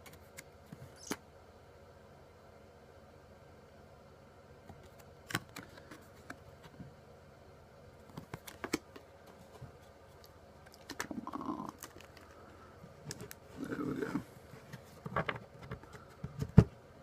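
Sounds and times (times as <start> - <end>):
faint steady hum: 0.0 - 17.0
cards clicking and tapping: 8.0 - 9.4.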